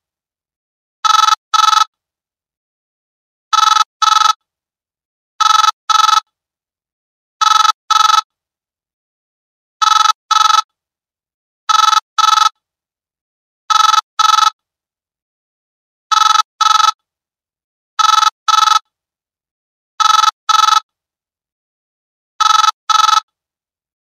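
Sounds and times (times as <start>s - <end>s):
old telephone ringing: 1.0s - 1.9s, 3.5s - 4.4s, 5.4s - 6.2s, 7.4s - 8.3s, 9.8s - 10.7s, 11.7s - 12.6s, 13.7s - 14.6s, 16.1s - 17.0s, 18.0s - 18.8s, 20.0s - 20.9s, 22.4s - 23.3s.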